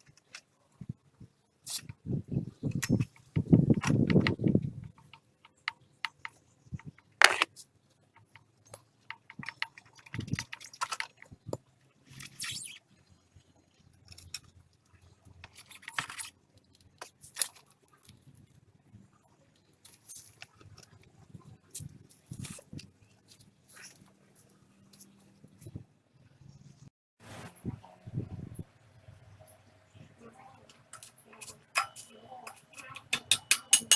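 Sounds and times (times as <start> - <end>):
metal tools clicking and clinking: 31.0 - 33.9.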